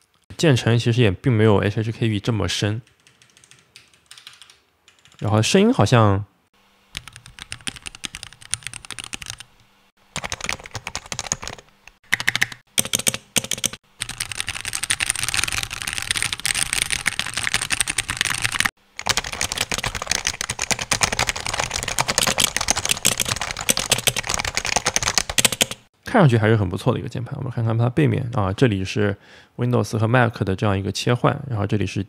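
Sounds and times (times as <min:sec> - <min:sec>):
fast typing on mechanical keyboards: 0:02.8 - 0:05.3, 0:07.0 - 0:09.5, 0:10.2 - 0:25.9.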